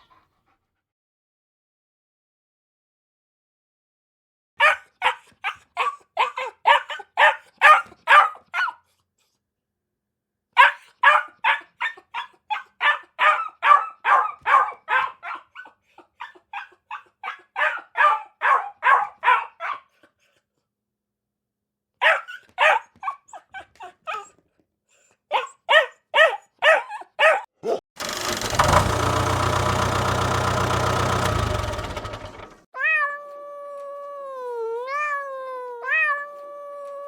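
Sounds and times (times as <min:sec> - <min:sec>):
dog barking: 0:04.6 - 0:08.9, 0:10.6 - 0:20.0, 0:22.0 - 0:24.4, 0:25.3 - 0:27.8.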